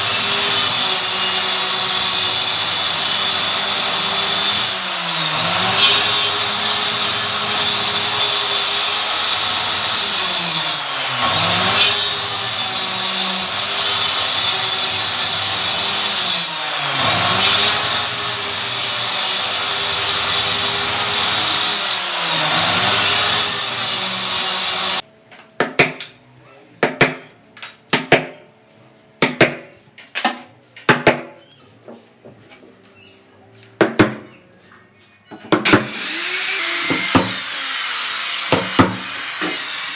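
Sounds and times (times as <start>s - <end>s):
power tool working wood: 0.0s - 25.0s, 35.6s - 39.9s.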